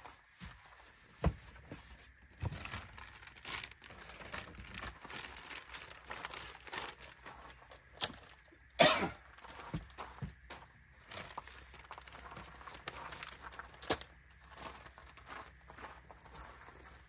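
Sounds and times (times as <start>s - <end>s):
footsteps crunching over ground: 0.0s - 17.0s.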